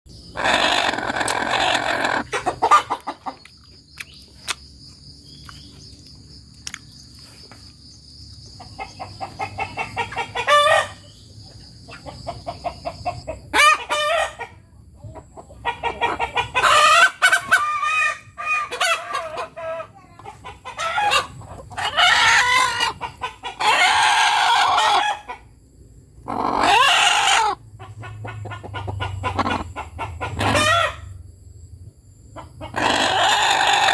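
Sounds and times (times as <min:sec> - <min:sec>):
hens cackling: 0:00.3 - 0:03.5, 0:08.6 - 0:25.6, 0:26.2 - 0:31.2, 0:32.3 - 0:33.9.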